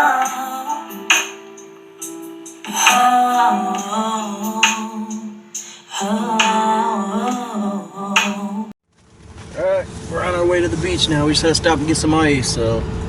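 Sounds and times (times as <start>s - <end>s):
sharp percussive hits: 0.0s - 5.8s
sung melody over keyboard: 0.0s - 8.8s.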